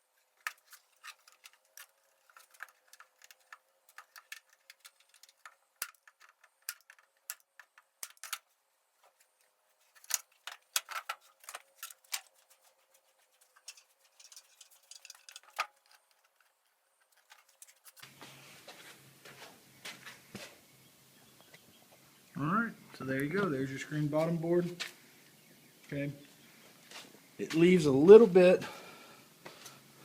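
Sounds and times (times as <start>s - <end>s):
clicks and taps of wooden parts: 0.4s - 9.3s, 10.0s - 18.1s
soft sliding hiss: 17.1s - 20.8s, 28.4s - 30.0s.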